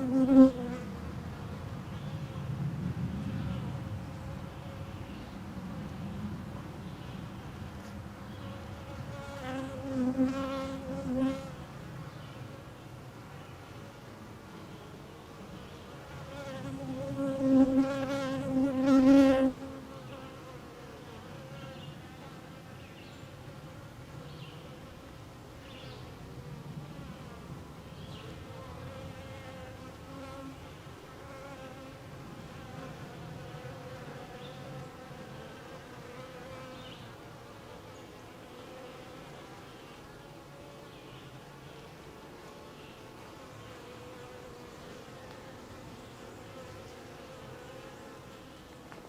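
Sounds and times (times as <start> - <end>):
honeybees buzzing: 0.0 - 0.8, 8.6 - 11.6, 15.3 - 21.9.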